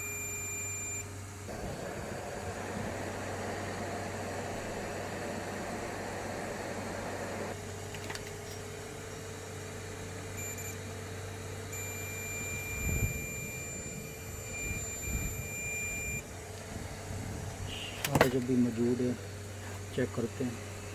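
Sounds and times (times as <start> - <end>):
multimeter beeping: 0.0 - 1.1, 10.4 - 10.8, 11.6 - 16.2
rush of air: 1.5 - 7.5.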